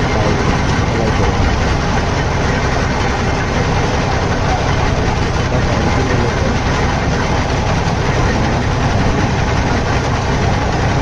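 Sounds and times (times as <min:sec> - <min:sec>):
heavy machinery engine droning: 0:00.0 - 0:11.0.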